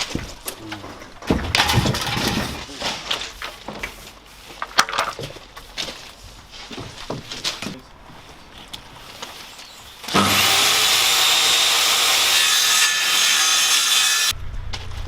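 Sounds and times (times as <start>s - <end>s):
power saw cutting wood: 9.6s - 14.4s.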